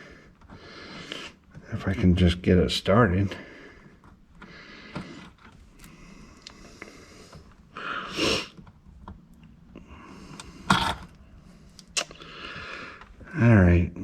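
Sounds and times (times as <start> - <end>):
noisy breath: 0.0 - 1.6, 3.3 - 8.8, 9.6 - 13.3.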